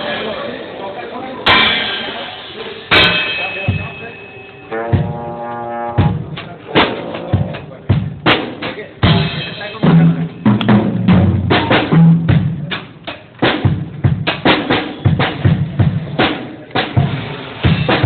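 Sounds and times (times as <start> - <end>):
drum kit playing: 0.0 - 18.0
low bass notes: 4.7 - 8.4.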